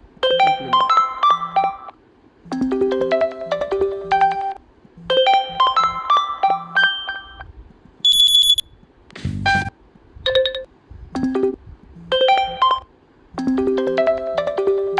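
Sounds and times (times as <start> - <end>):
high steady beep: 6.6 - 8.8.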